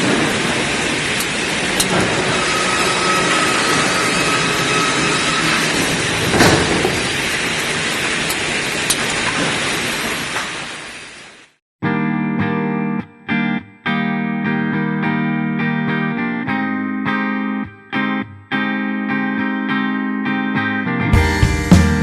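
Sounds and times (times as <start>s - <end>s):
wood-processing machinery running: 0.0s - 11.5s.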